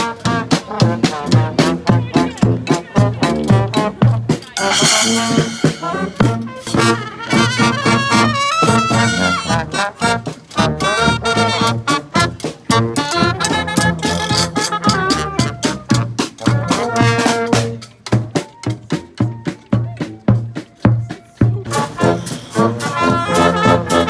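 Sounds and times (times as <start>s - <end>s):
brass band playing: 0.0s - 3.9s, 4.6s - 17.9s, 21.7s - 24.0s
steady drum beat: 4.6s - 6.7s.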